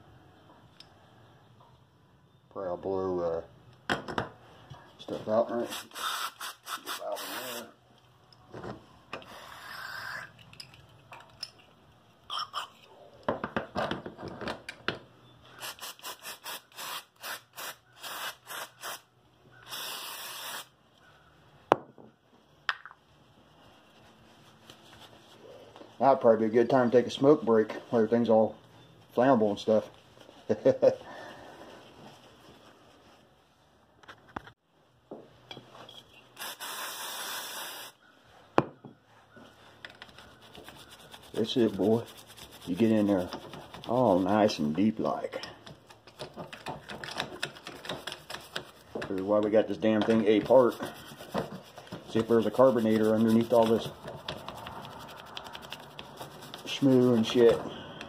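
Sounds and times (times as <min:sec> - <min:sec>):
hissing spray bursts: 0:05.6 - 0:07.7, 0:15.6 - 0:20.8, 0:36.4 - 0:38.0
aerosol spray hiss: 0:19.7 - 0:20.7, 0:36.4 - 0:38.0
scraping and rubbing of parts: 0:39.2 - 0:44.8, 0:45.4 - 0:57.9.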